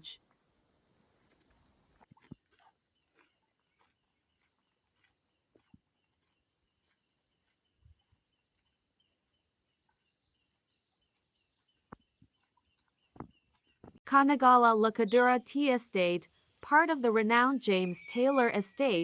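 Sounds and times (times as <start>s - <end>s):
insects and birds chirping: 2.7s - 13.8s.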